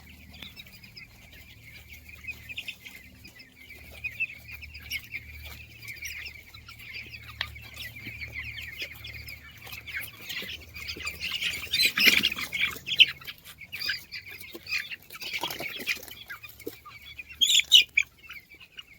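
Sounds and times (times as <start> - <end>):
chickens peeping and chirping: 0.0 - 18.9
chickens squawking: 0.0 - 18.9.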